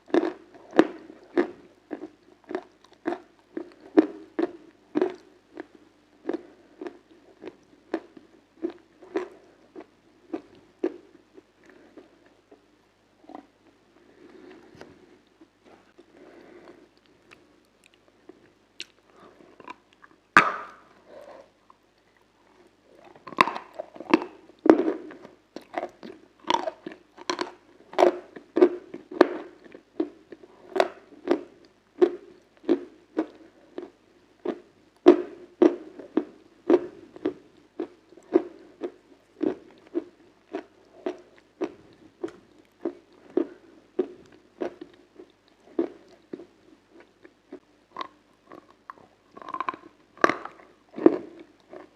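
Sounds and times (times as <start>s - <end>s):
crunchy chewing: 0.0s - 12.6s, 14.1s - 51.9s
person biting crunchy ice cream: 22.9s - 29.5s, 49.4s - 51.9s.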